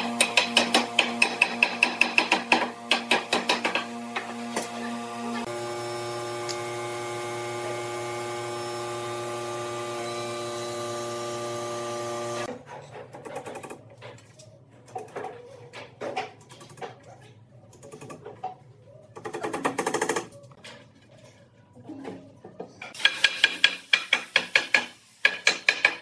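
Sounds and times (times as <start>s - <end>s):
electric power tool running: 2.6s - 12.5s.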